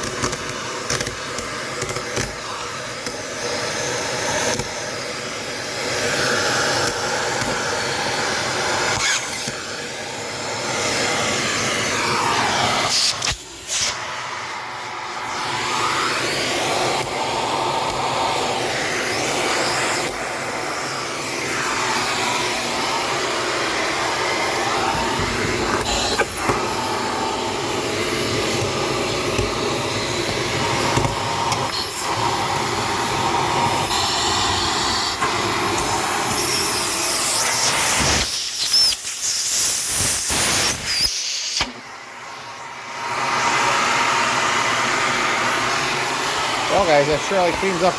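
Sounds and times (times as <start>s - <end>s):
vacuum tool knocking: 0.0s - 4.8s, 24.2s - 36.0s
vacuum cleaner running: 0.0s - 47.9s.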